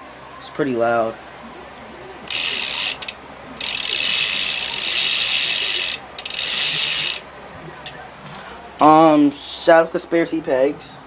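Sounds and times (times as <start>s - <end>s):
bike hub freewheeling clicks: 2.3s - 7.2s.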